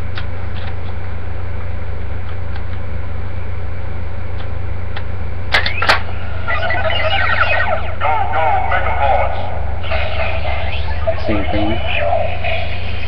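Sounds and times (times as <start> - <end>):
low electrical hum: 0.0 - 13.0
toy electronic sound effect: 5.6 - 13.0
rising electronic tone: 5.7 - 13.0.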